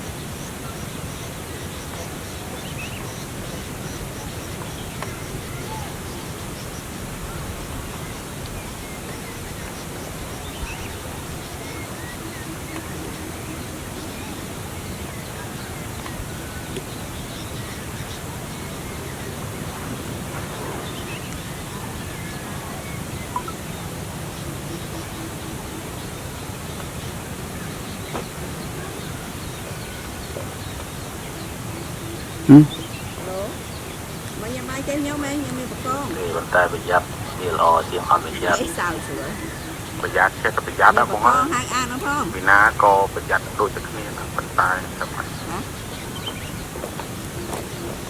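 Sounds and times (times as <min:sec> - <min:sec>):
outdoor background hiss: 0:00.0 - 0:48.0
faint bird chirps: 0:27.6 - 0:46.6
faint short bird calls: 0:32.4 - 0:32.8.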